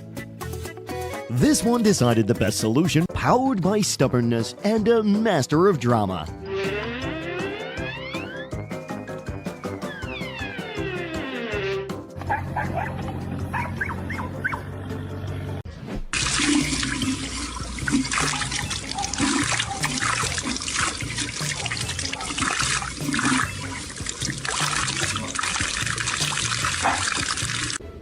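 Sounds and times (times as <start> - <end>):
background music: 0.0 - 28.0
dog yelping: 12.2 - 14.7, 18.8 - 20.3, 26.8 - 27.2
running water: 16.2 - 27.8.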